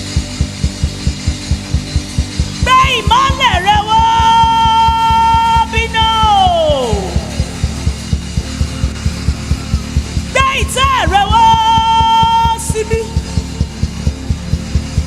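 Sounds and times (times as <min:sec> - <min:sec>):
high melodic line: 0:00.0 - 0:15.0
low drum beat: 0:00.0 - 0:15.0.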